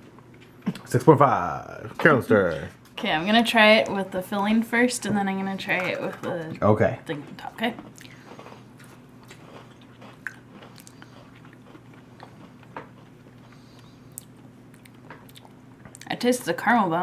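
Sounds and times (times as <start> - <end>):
low steady hum: 0.0 - 17.0
person chewing cookie crunches: 7.8 - 16.1.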